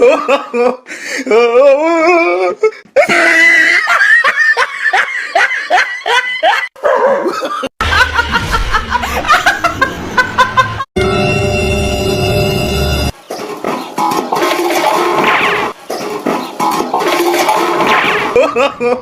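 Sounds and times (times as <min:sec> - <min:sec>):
people laughing hard: 0:00.0 - 0:10.9, 0:18.3 - 0:19.0.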